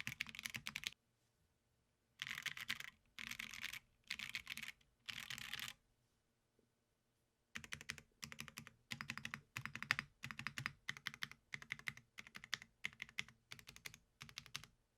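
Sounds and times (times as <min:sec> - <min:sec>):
typing on mechanical keyboard: 0:00.0 - 0:01.0, 0:02.2 - 0:05.8, 0:07.6 - 0:14.8.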